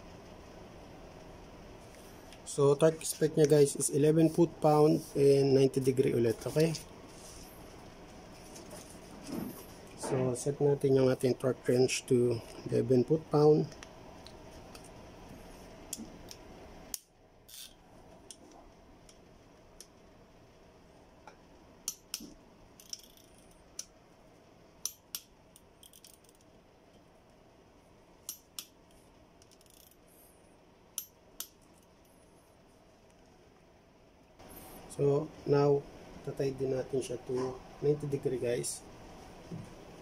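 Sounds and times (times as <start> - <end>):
torque wrench clicking: 16.3 - 17.8, 21.8 - 23.9, 24.8 - 26.5, 29.4 - 30.0.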